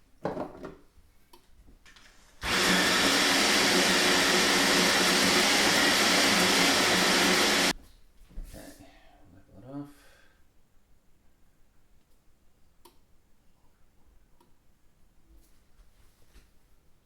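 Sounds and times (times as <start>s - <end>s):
electric motor humming: 2.4s - 7.7s.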